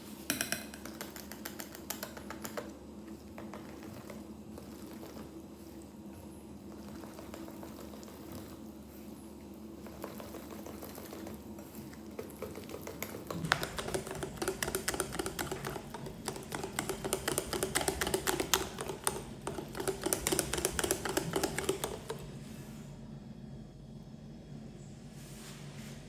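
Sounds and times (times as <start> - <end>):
utensil tapping against mixing bowl: 0.2 - 5.3, 9.8 - 22.3.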